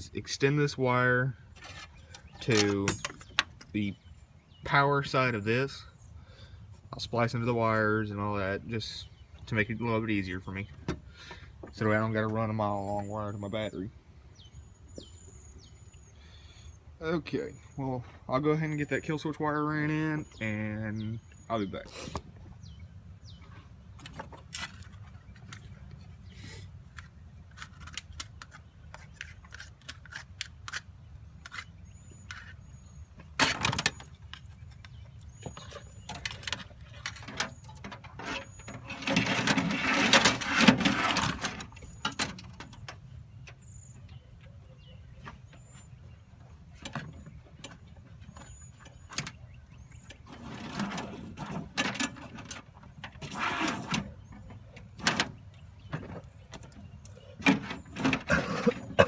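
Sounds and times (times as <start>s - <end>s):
wire scraping and rustling: 23.4s - 26.2s, 33.4s - 42.9s, 50.0s - 59.0s.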